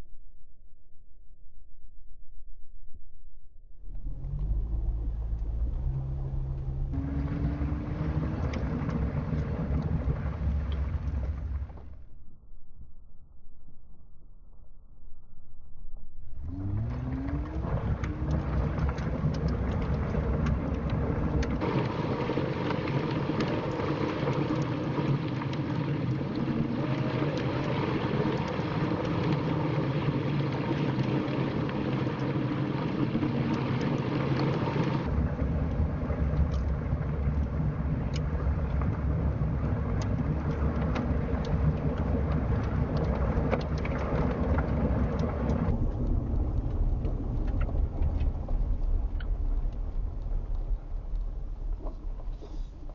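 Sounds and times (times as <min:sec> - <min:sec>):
tyres and engine rumble: 0:03.8 - 0:12.0, 0:16.3 - 0:51.1
small ticks: 0:39.9 - 0:52.8.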